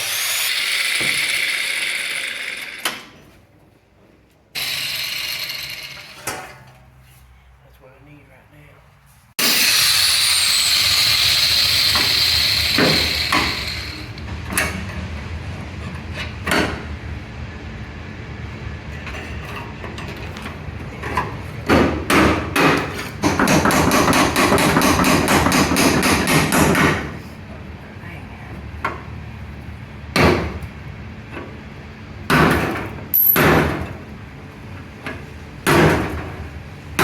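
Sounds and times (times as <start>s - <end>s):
power tool whirring: 0.0s - 3.1s, 4.6s - 6.3s, 9.4s - 14.2s
knocks on sheet metal: 21.7s - 27.1s, 32.3s - 32.8s, 33.4s - 33.8s, 35.6s - 36.3s
rapid hammering on metal: 21.7s - 27.1s.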